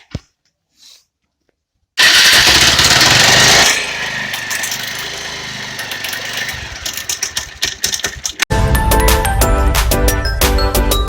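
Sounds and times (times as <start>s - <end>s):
motorcycle engine starting and running: 2.0s - 8.5s.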